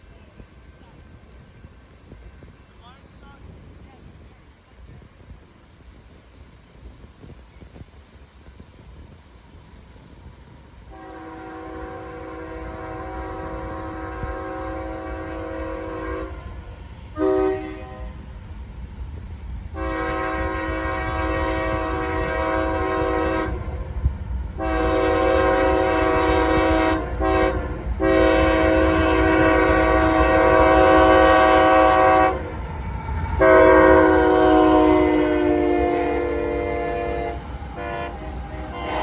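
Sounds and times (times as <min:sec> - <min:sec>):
train rumbling: 0:00.0 - 0:39.0
locomotive air horn blasts: 0:10.9 - 0:16.5, 0:17.2 - 0:18.2, 0:19.8 - 0:23.8, 0:24.6 - 0:32.5, 0:33.4 - 0:39.0.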